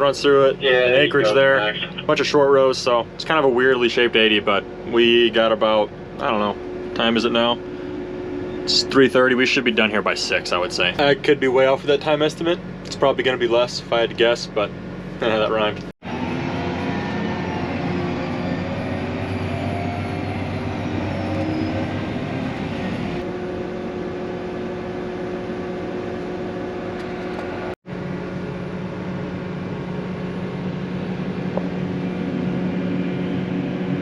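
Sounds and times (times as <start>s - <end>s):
diesel engine inside cab: 0.0s - 34.0s
shifting whine: 0.0s - 34.0s.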